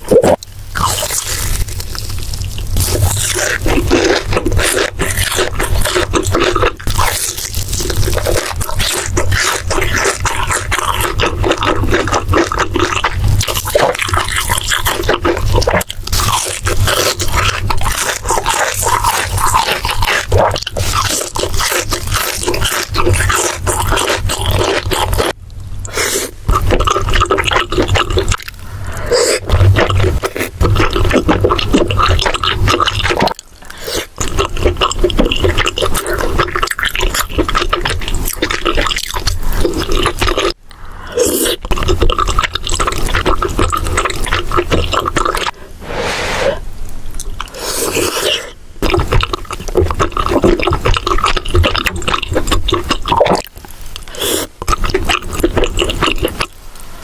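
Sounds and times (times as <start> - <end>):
wet chewing and smacking: 0.0 - 45.6, 47.1 - 56.6.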